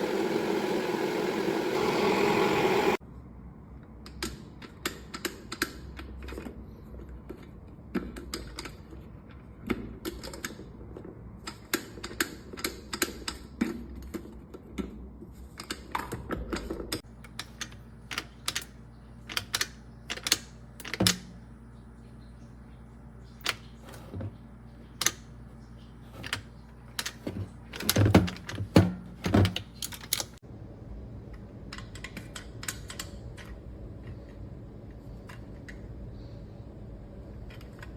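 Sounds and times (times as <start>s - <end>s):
faint steady hum: 0.0s - 3.0s
kettle clicks and knocks: 27.0s - 30.0s.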